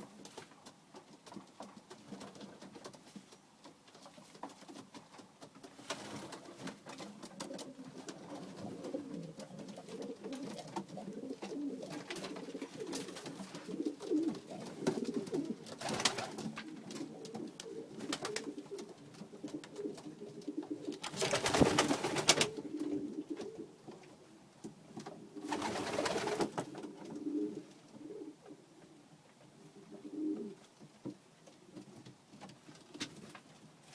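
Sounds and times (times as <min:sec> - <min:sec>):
pigeons cooing: 0:07.4 - 0:23.9, 0:25.2 - 0:29.0, 0:29.7 - 0:30.6.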